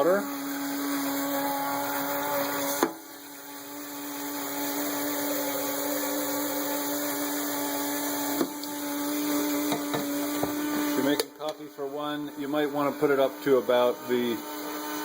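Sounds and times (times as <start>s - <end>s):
coffee maker motor humming: 0.0s - 15.0s.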